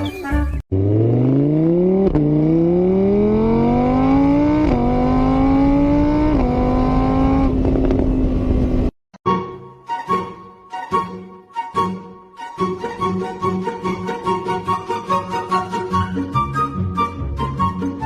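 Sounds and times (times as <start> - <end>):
car engine accelerating: 0.7 - 9.0.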